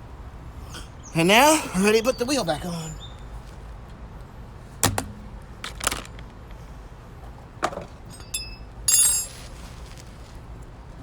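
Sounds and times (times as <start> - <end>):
knocks: 4.8 - 6.1
ringing metal clatter: 8.0 - 9.7
metallic clinks of tools: 8.1 - 9.5.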